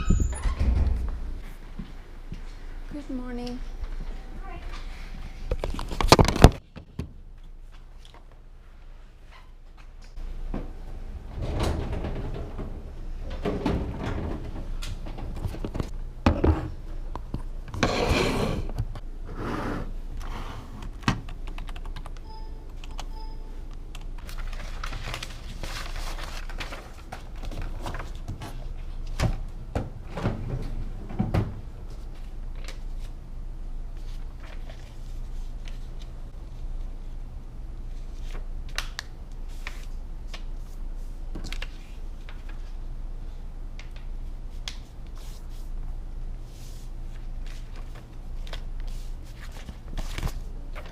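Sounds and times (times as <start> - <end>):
short beeps: 22.2 - 23.6.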